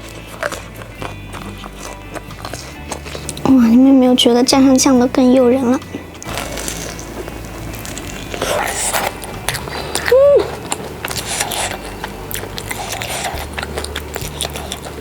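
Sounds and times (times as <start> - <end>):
crunchy biting and chewing: 0.0 - 15.0
person humming briefly: 10.0 - 10.6.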